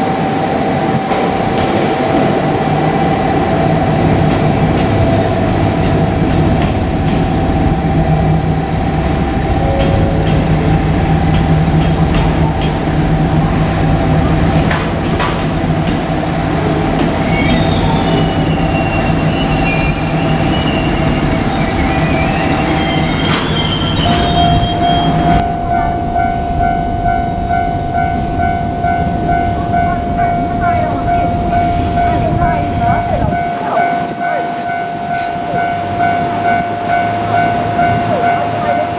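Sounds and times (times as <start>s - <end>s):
diesel railcar low drone: 0.0s - 38.9s
thin high squealing tones: 17.2s - 27.9s.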